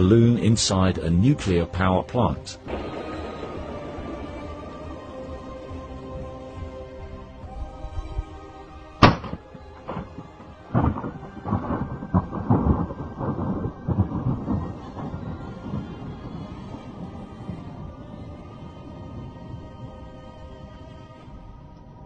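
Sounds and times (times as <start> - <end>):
faint background music: 0.0 - 22.0.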